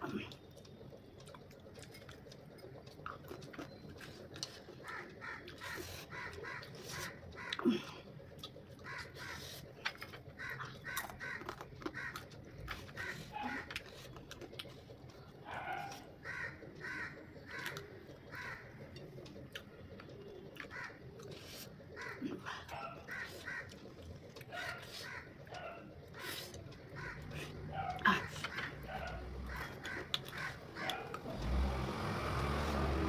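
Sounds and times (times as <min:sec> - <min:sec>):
birds calling: 0:08.3 - 0:33.0.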